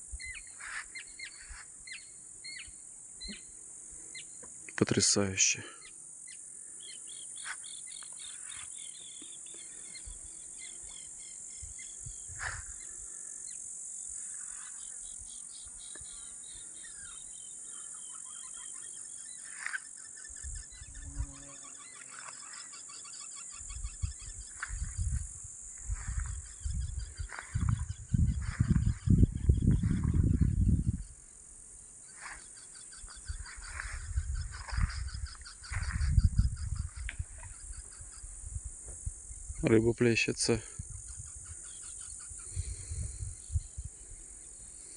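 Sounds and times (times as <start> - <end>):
insects chirring: 0.0 - 44.9
birds chirping and trilling: 0.2 - 38.4, 39.3 - 44.9
wind buffeting microphone: 23.6 - 31.2, 33.2 - 39.6, 42.4 - 44.0.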